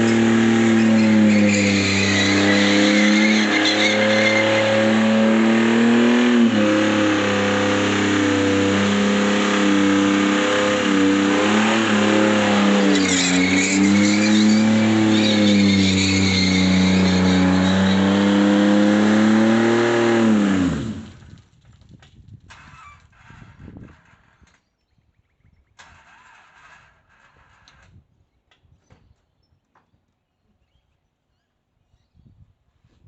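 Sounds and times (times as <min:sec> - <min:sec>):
tyres squealing: 0:00.0 - 0:19.7
car engine revving high: 0:00.0 - 0:21.2.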